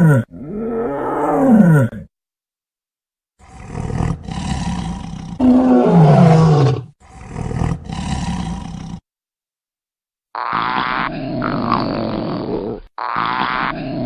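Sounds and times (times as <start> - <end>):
dinosaur roar: 0.0 - 2.1, 3.4 - 9.0.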